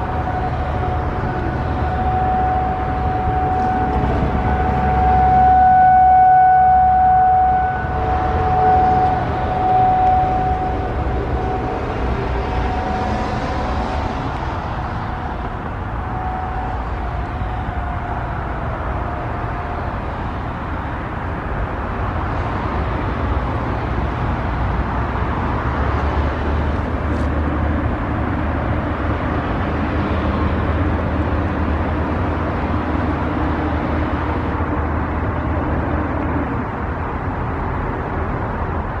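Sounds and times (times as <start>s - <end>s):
faint steady tone: 0.0s - 20.9s
road traffic rumble: 0.0s - 39.0s.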